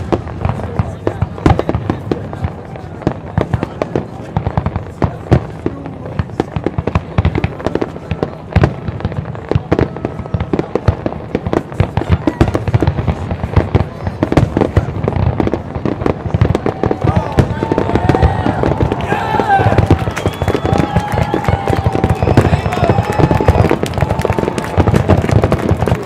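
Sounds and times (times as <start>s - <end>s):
fireworks booming and crackling: 0.0s - 26.0s.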